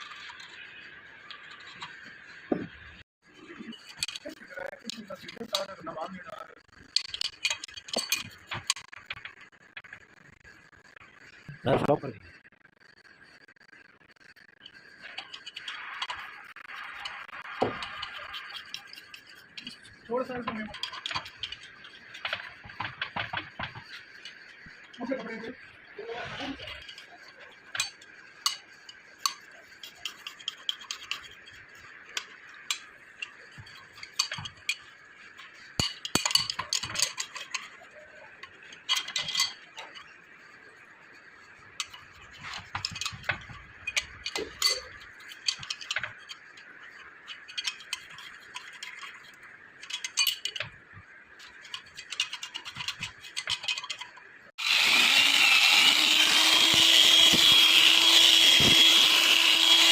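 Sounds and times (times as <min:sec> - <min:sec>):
metal tools clinking and scraping: 0:03.4 - 0:09.3, 0:14.6 - 0:25.5, 0:26.4 - 0:40.2, 0:41.7 - 0:59.9
power tool whining: 0:54.6 - 0:59.9.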